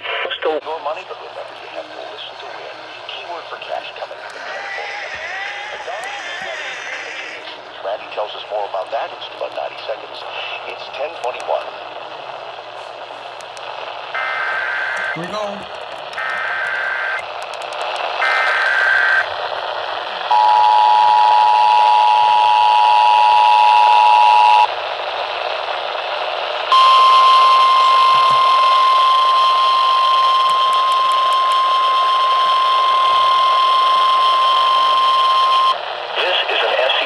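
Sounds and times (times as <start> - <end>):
broadcast hiss: 0.0 - 37.0
data header bursts: 14.1 - 15.6
two-tone attention signal: 26.7 - 35.8.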